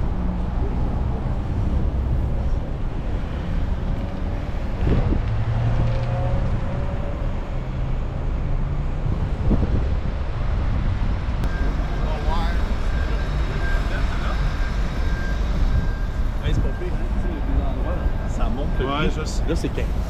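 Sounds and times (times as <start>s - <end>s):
street traffic engines rumbling: 0.0s - 20.0s
wind noise on microphone: 0.8s - 7.4s, 8.9s - 11.9s.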